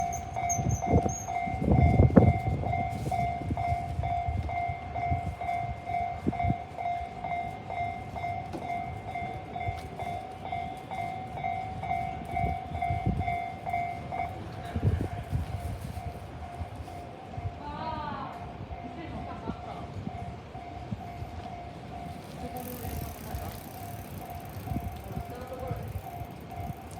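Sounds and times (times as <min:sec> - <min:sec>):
crossing warning bell dinging: 0:00.0 - 0:26.9
train wheel rumble: 0:00.0 - 0:26.9
wheels clacking over rail joints: 0:21.7 - 0:26.9.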